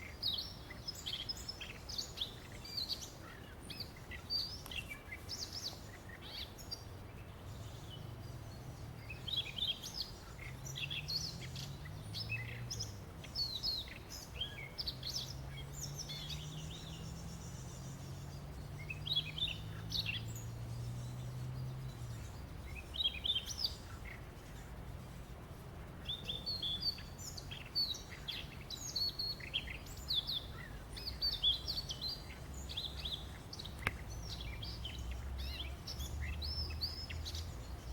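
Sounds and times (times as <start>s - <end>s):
songbirds chirping and trilling: 0.0s - 37.9s.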